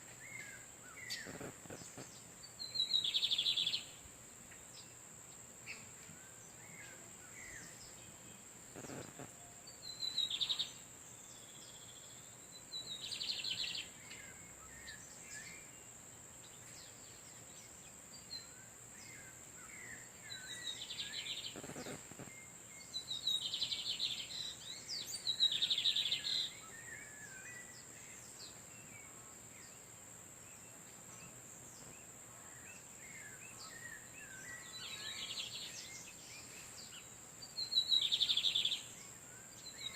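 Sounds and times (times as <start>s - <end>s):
small bird chirps: 0.1s - 5.0s, 5.6s - 15.8s, 16.4s - 28.7s, 32.6s - 39.9s
buzzy birdsong phrases: 0.2s - 4.0s, 5.7s - 15.8s, 16.4s - 39.9s.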